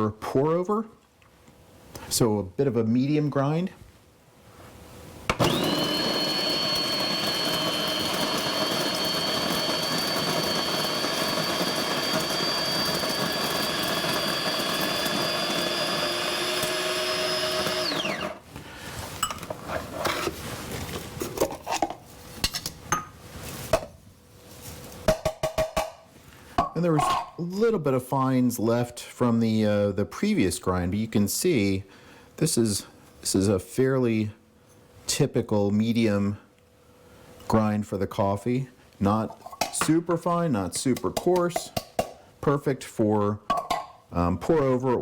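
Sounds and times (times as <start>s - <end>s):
coffee grinder motor whining: 5.3s - 18.5s.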